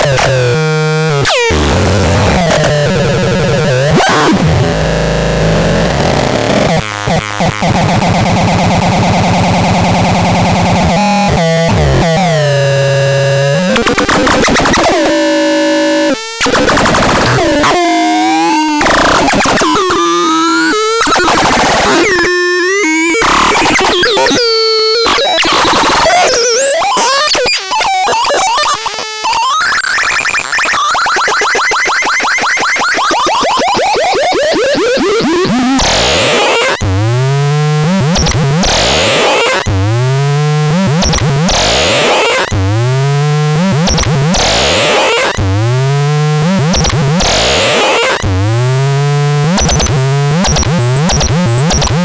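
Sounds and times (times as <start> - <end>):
harsh synthesizer tones: 0.0 - 8.0, 33.3 - 52.0.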